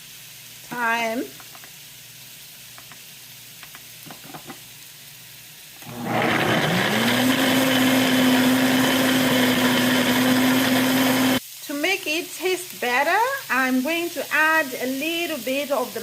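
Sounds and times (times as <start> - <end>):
electric blender motor: 5.8 - 11.4.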